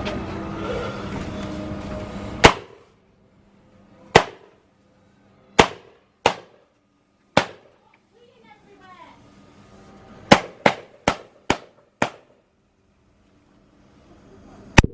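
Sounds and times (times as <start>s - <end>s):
firework bangs: 2.4s - 2.9s, 4.2s - 4.6s, 5.6s - 6.6s, 7.4s - 7.7s, 10.3s - 12.4s.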